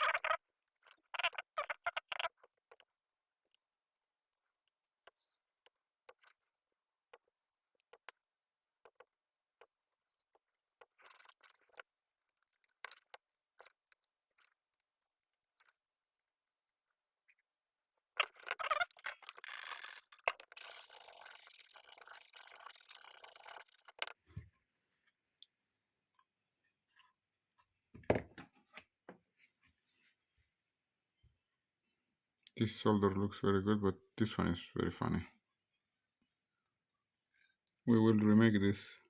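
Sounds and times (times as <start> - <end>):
small clicks and taps of tools: 2.0 - 24.2.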